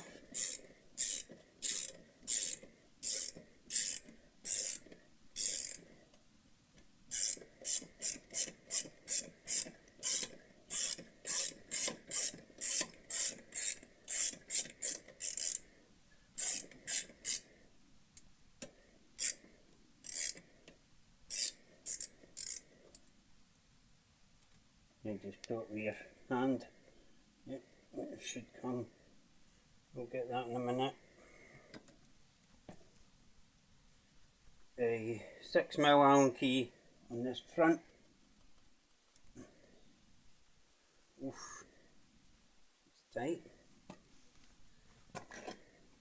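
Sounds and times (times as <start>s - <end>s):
socket ratchet clicking: 0.3s - 5.8s, 7.1s - 15.6s, 16.4s - 17.4s, 20.0s - 20.4s, 21.3s - 22.6s.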